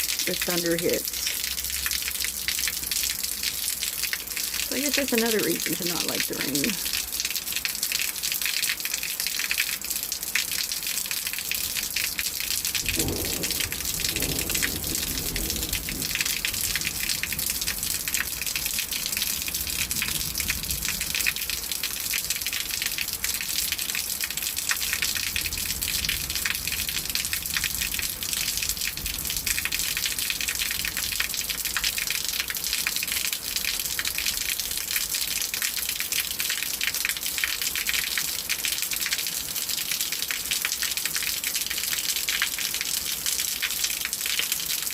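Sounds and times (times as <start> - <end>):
heavy rain falling: 0.0 - 44.9
low rumble of thunder: 12.6 - 18.6.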